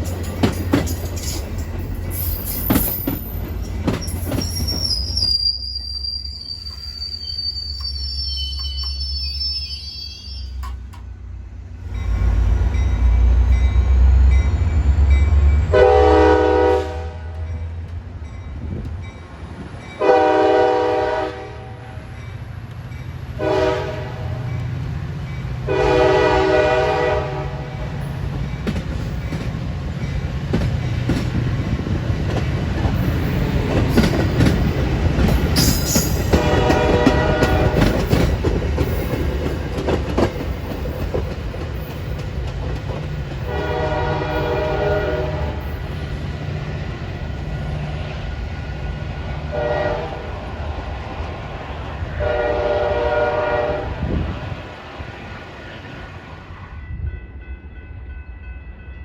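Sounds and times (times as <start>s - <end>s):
rail clatter: 0.0s - 5.4s, 28.0s - 49.1s
low train rumble: 0.0s - 59.0s
train horn chime: 12.0s - 17.7s, 20.0s - 22.2s, 23.4s - 24.6s, 25.7s - 28.2s, 35.6s - 38.4s, 43.4s - 46.0s, 48.8s - 50.3s, 52.2s - 54.0s.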